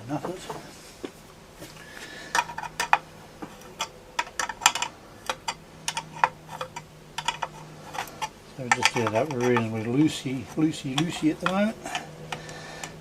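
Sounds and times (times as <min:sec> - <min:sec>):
metallic clicks of tool and nuts: 0:03.6 - 0:13.0.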